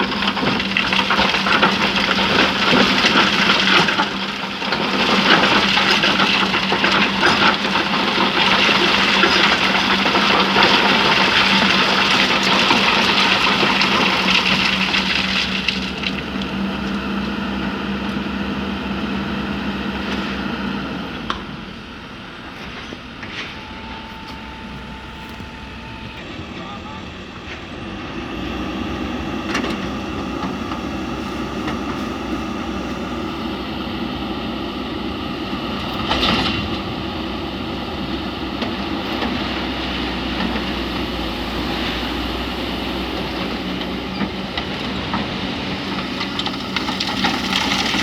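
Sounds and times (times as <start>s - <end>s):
excavator engine humming: 0.0s - 48.0s
sand and stones scraping and pouring: 4.8s - 16.5s, 29.9s - 33.4s.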